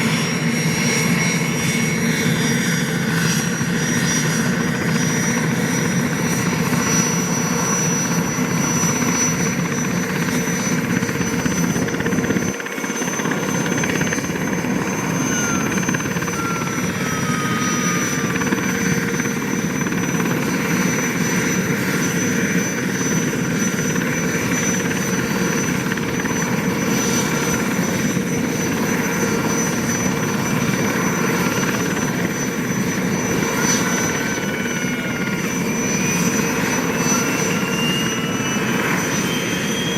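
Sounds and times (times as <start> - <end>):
helicopter turbine whine: 0.0 - 39.9
high whistle: 13.0 - 19.4, 29.3 - 39.9.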